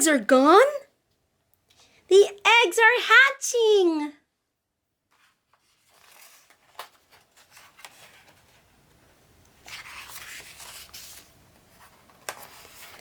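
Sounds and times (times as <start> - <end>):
paper rustling: 5.1 - 13.0.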